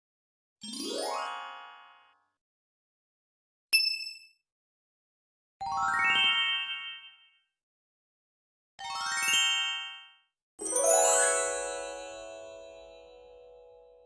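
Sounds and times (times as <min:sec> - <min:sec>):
twinkle chime notes stepping upward: 0:10.6 - 0:13.8.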